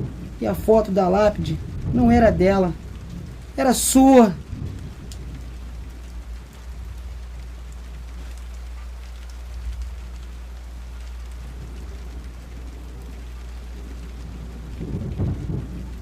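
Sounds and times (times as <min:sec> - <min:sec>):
low rumble: 0:00.0 - 0:16.0
steady rain falling: 0:00.0 - 0:16.0.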